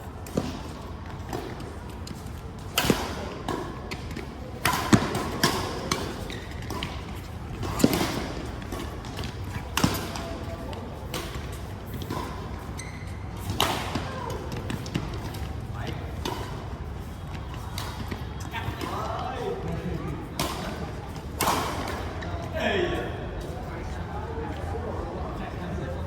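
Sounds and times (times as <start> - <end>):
racket striking shuttlecock: 0.3 - 16.8.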